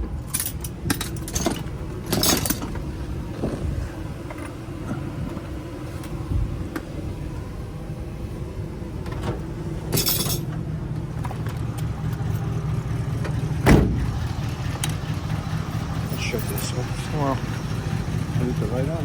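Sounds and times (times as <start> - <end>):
vehicle engine rumbling: 0.0 - 19.0
loud thump: 13.6 - 14.1.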